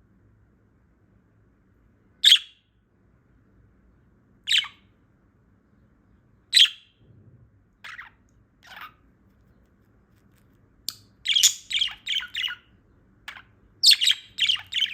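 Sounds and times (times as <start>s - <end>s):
budgerigar chirping calls: 2.2s - 2.6s, 4.5s - 4.9s, 6.5s - 6.9s, 7.8s - 9.0s, 11.2s - 14.9s.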